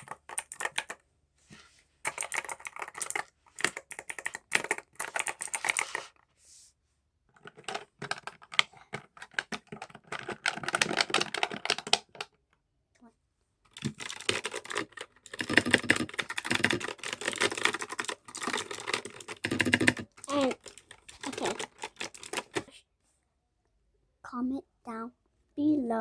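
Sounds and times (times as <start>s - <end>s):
computer keyboard typing fast: 0.0s - 1.0s, 2.1s - 6.2s, 7.5s - 12.3s, 13.8s - 22.6s.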